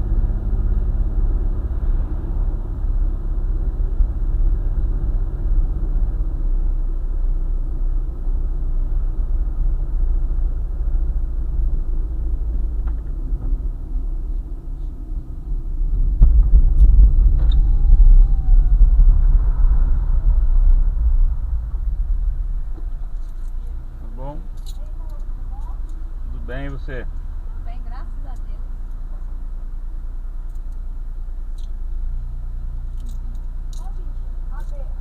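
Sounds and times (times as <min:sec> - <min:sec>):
road and engine rumble: 0:00.0 - 0:35.0.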